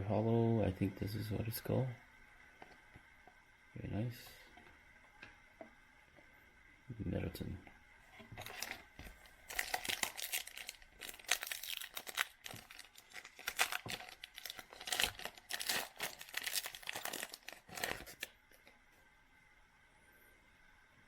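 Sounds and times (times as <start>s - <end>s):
plastic wrapper tearing and crinkling: 8.4s - 18.4s.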